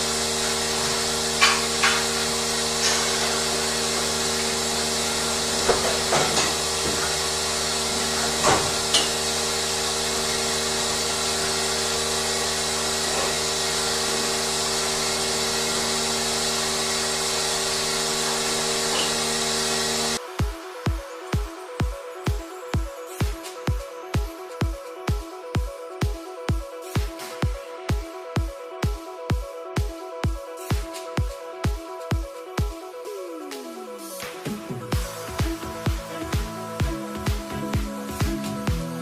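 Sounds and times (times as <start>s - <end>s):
machinery humming: 0.0s - 29.5s, 33.0s - 39.0s
sharp knocks or clanks: 1.4s - 2.2s, 5.6s - 7.2s, 8.4s - 9.2s.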